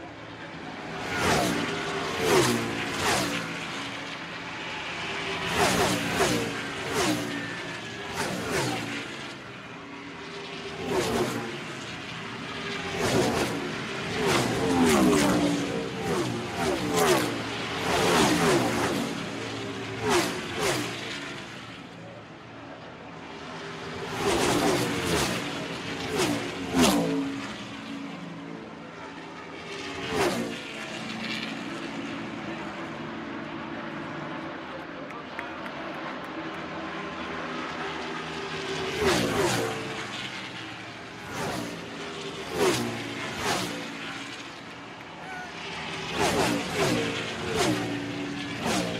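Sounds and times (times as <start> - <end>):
crowd and track noise: 0.0 - 48.9
engines droning: 0.0 - 48.9
race cars passing by: 0.0 - 48.9.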